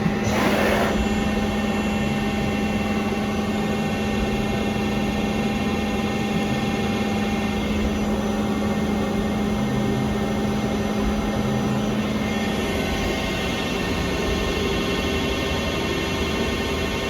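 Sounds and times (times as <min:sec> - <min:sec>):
lathe machine hum: 0:00.0 - 0:03.9.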